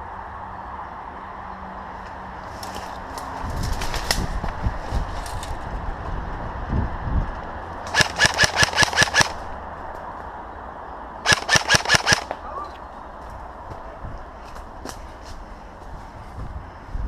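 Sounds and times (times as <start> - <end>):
airsoft gun rapid shots: 7.9 - 9.4, 11.2 - 12.3.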